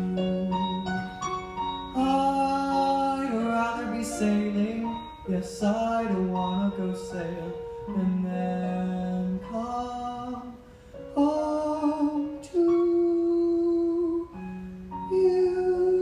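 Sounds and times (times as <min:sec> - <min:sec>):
person singing drawn-out notes: 0:00.0 - 0:10.6.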